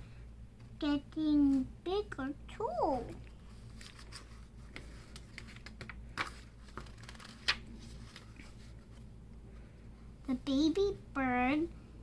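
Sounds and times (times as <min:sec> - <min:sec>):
steady low hum: 0:00.0 - 0:12.0
paper rustling: 0:03.4 - 0:09.1.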